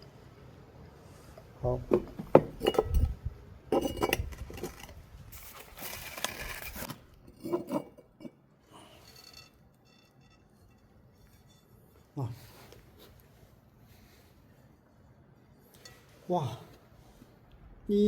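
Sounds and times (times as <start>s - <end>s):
glass knocking and clinking: 1.8s - 4.7s, 7.3s - 8.3s.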